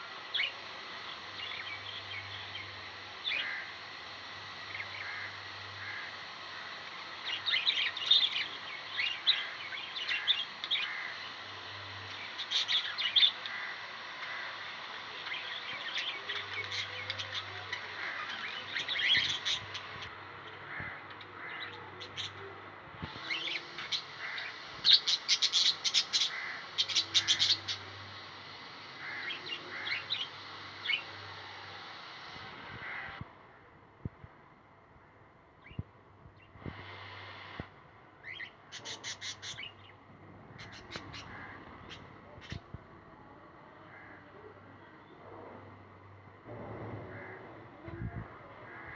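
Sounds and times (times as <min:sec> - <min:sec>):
parrots chirping and squawking: 0:03.2 - 0:04.0, 0:04.8 - 0:20.1, 0:23.1 - 0:33.2, 0:38.2 - 0:39.8, 0:40.5 - 0:42.6.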